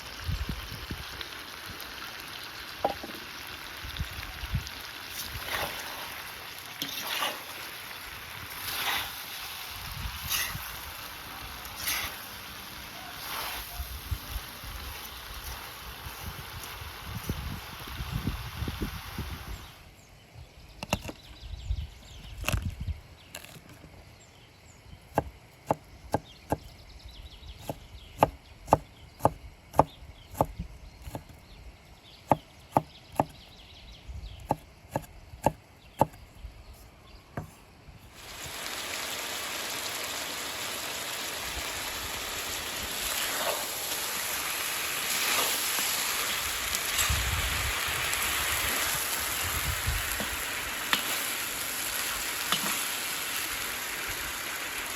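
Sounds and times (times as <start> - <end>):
food sizzling while frying: 0.0 - 19.7, 38.1 - 54.9
knife chopping on wooden board: 27.6 - 31.3, 32.3 - 33.4, 34.5 - 36.2.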